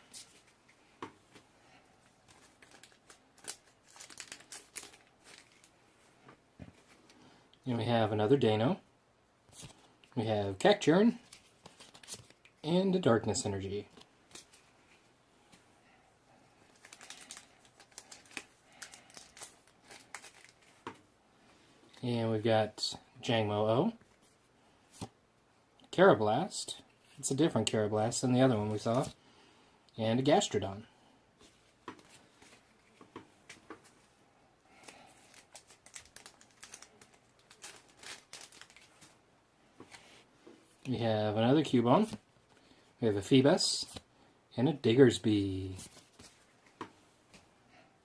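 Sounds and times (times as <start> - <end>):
trading cards being handled: 2.1 - 5.8, 11.2 - 12.7, 13.8 - 15.6, 16.6 - 21.1, 34.8 - 39.2, 45.7 - 47.4
foil wrapper crinkling: 2.2 - 5.8, 16.7 - 20.8, 34.8 - 39.2.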